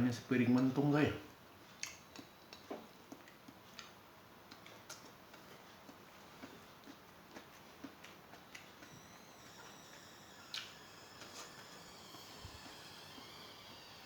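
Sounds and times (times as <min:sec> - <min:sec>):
chewing: 0:01.6 - 0:09.0.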